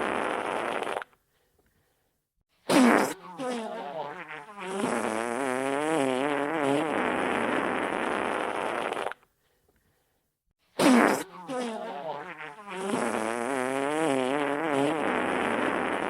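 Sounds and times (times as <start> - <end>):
wet fart sounds: 0.0 - 1.2, 2.7 - 9.2, 10.8 - 16.0.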